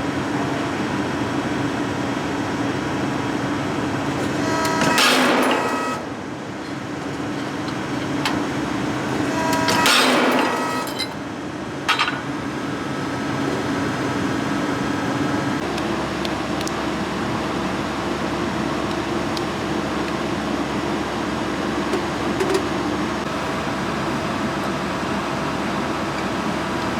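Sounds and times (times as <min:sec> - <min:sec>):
hydraulic machine hum: 0:03.7 - 0:26.9.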